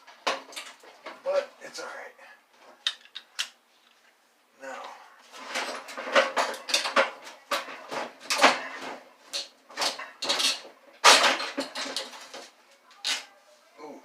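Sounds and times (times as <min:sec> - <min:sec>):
sheet metal clanking and scraping: 0:05.3 - 0:12.5.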